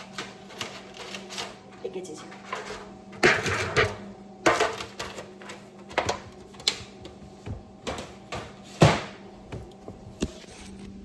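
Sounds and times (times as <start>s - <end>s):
tin pans clattering: 0.0s - 9.2s.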